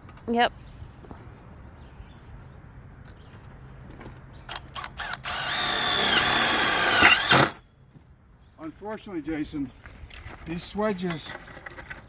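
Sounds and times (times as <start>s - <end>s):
power drill driving a screw: 4.5s - 7.6s.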